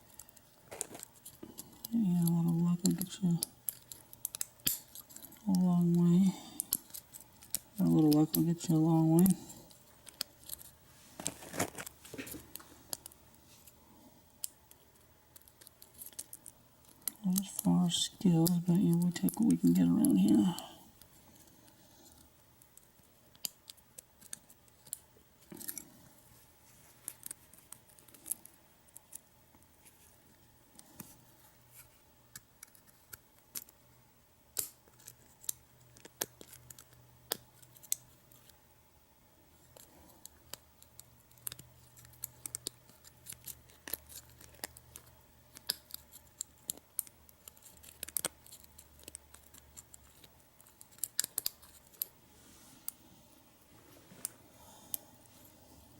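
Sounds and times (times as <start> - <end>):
lock picks clicking and scratching: 0.1 - 5.9, 14.4 - 20.6, 34.5 - 38.6, 39.6 - 52.2.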